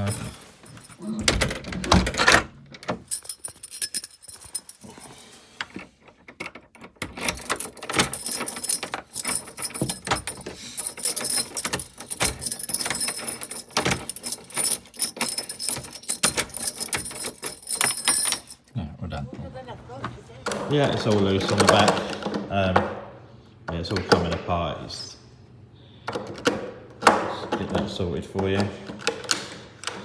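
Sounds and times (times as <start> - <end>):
door lock and handle clicking: 0.0 - 4.8, 5.6 - 18.7
keys jangling: 0.0 - 18.7.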